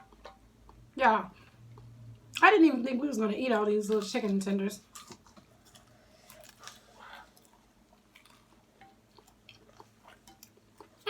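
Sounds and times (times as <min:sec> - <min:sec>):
faint chewing: 0:03.9 - 0:11.0.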